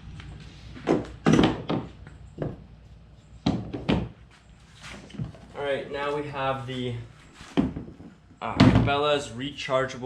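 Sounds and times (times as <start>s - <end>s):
equipment knocking and clunking: 0.8s - 2.7s.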